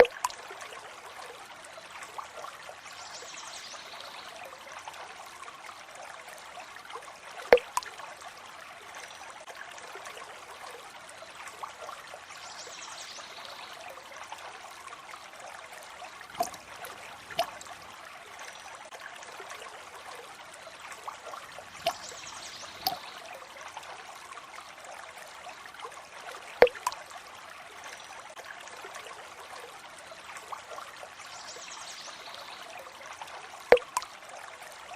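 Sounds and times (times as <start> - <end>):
water trickling: 0.0 - 34.9
water drops landing: 7.5 - 7.9, 16.3 - 17.9, 21.6 - 23.0, 26.6 - 27.0, 33.7 - 34.1.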